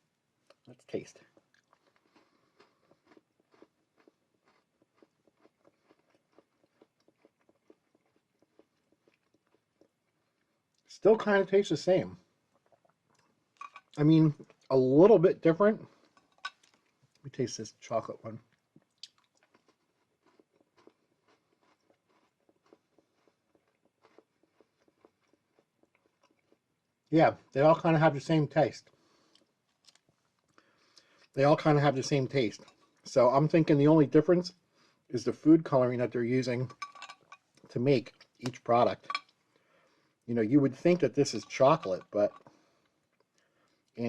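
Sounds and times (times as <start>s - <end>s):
crunching of chewed wafer: 0.4s - 10.9s, 15.9s - 17.3s, 18.3s - 27.1s, 28.8s - 31.4s, 40.8s - 44.0s.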